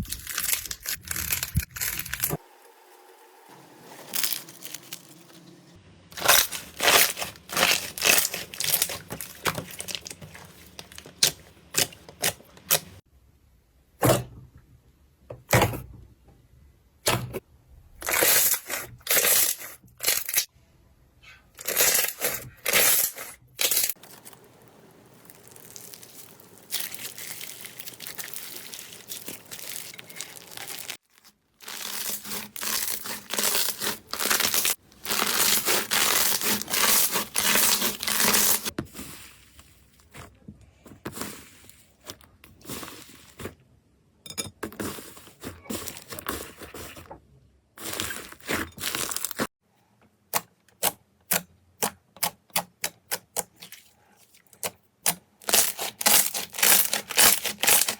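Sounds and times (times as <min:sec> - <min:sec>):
slime crackling when squeezed: 0:23.6 - 0:38.6.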